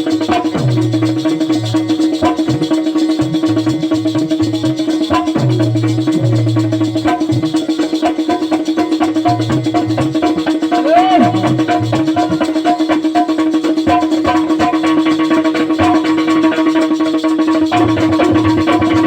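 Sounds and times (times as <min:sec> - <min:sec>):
rattling percussion and drum beats: 0:00.0 - 0:19.0
held note: 0:09.1 - 0:13.0.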